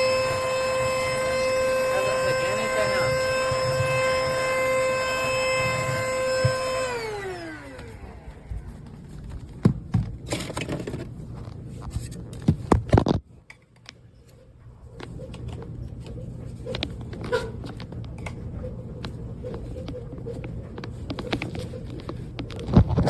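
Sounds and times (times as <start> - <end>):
handheld vacuum motor whining: 0.0 - 9.5.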